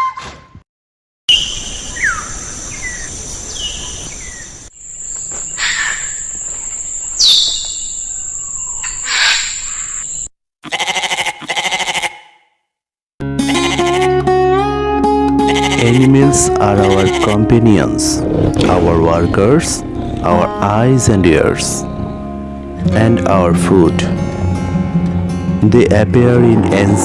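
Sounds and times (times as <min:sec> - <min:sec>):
bird whistled calls: 0:01.3 - 0:04.5, 0:05.5 - 0:10.3
high-pitched insect drone: 0:04.9 - 0:10.3
pulsing animal calls: 0:16.4 - 0:22.9.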